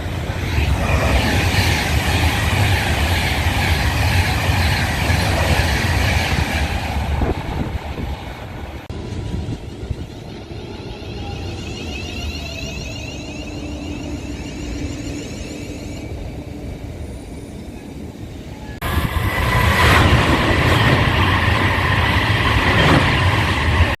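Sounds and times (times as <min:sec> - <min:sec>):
train rumbling past: 0:00.0 - 0:24.0
high ringing from train: 0:08.9 - 0:22.1.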